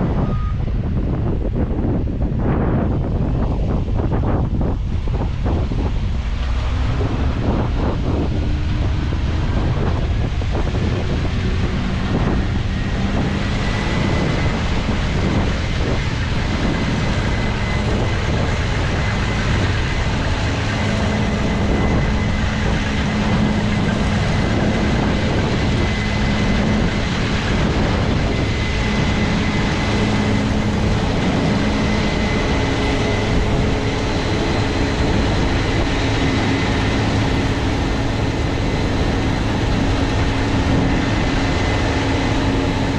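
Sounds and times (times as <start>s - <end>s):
faint high whine: 0.0s - 0.7s
combine harvester droning: 0.0s - 42.9s.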